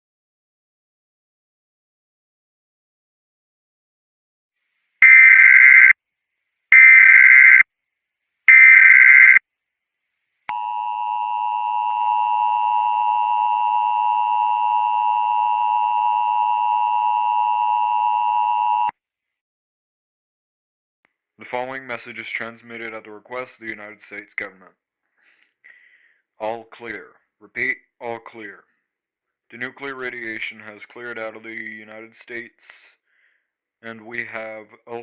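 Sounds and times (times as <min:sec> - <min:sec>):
screeching digital data bursts: 0:05.0 - 0:05.9, 0:06.8 - 0:07.6, 0:08.5 - 0:09.4
two-tone attention signal: 0:05.0 - 0:05.9, 0:06.8 - 0:07.6, 0:08.5 - 0:09.4, 0:10.5 - 0:18.9.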